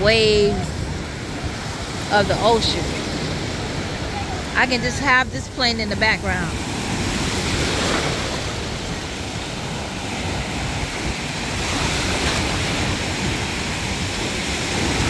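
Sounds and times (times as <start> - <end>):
ocean waves and surf: 0.0 - 15.0.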